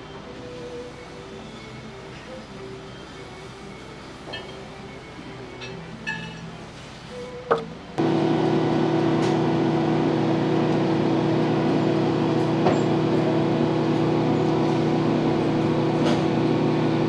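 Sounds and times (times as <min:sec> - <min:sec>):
faint music: 0:00.0 - 0:08.0
loud machine hum: 0:08.0 - 0:17.0.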